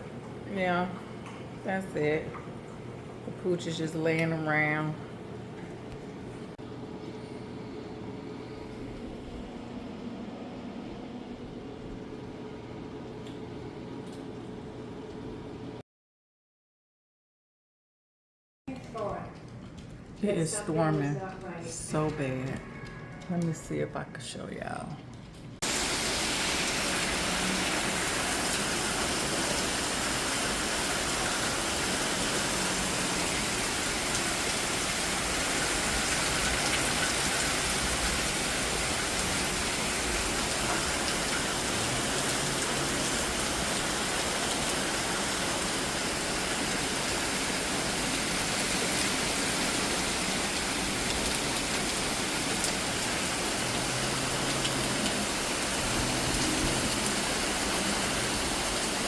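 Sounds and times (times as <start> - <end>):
heavy rain pouring: 25.6 - 59.0.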